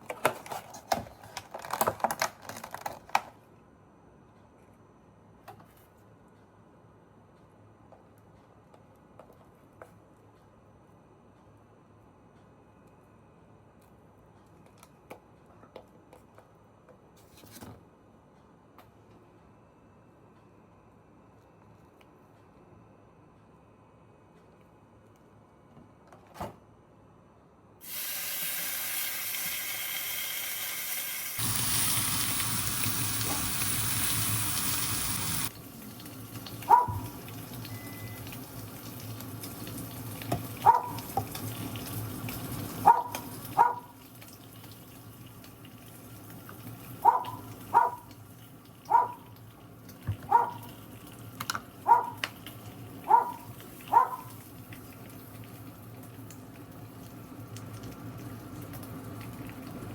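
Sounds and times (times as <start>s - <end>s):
kitchen tap running: 27.8s - 43.6s.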